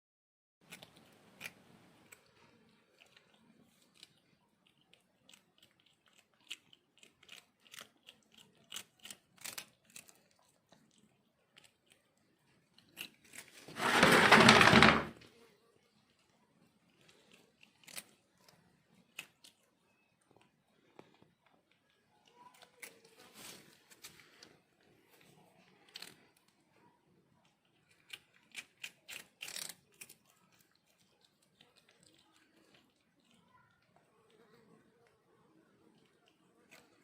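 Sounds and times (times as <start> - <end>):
cat chewing and crunching food: 0.6 - 37.0
loud rustling: 13.5 - 15.2.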